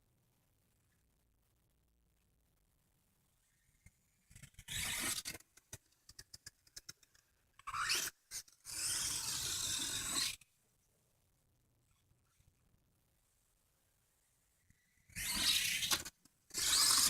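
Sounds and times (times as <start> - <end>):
toy car scraping and rubbing: 3.8 - 10.4, 14.8 - 17.0.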